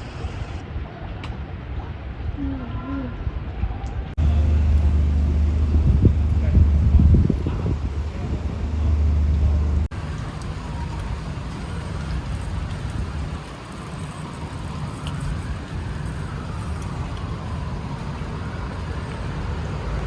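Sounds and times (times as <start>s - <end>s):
steady traffic noise: 0.0s - 20.0s
loud low vehicle rumble: 4.2s - 20.0s.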